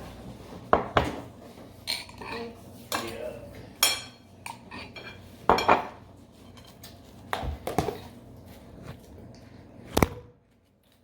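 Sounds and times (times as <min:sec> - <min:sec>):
dishes and utensils clinking: 0:00.8 - 0:07.0.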